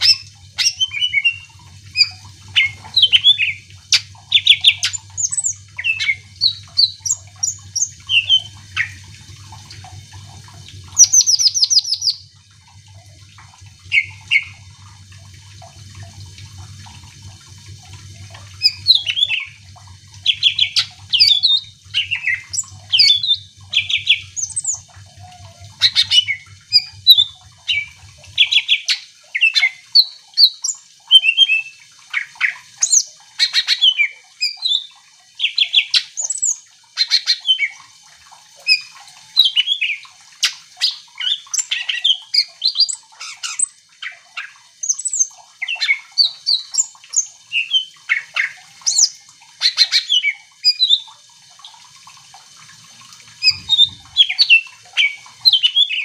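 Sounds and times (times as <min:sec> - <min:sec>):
bird singing chirps and whistles: 0:00.0 - 0:09.0, 0:11.0 - 0:12.2, 0:18.6 - 0:19.6, 0:20.3 - 0:31.8, 0:38.7 - 0:51.1, 0:53.4 - 0:56.0.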